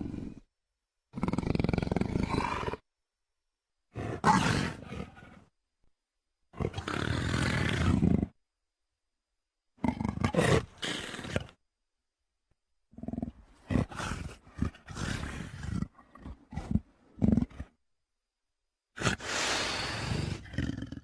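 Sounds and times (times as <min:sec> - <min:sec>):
dinosaur creature calls: 0:02.2 - 0:02.8.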